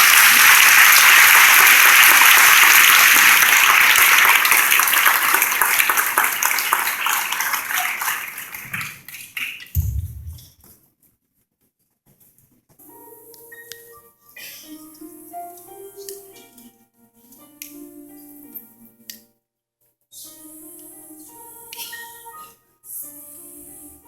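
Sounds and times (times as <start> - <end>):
audience applauding: 0.0 - 9.7
low thump: 9.8 - 10.6.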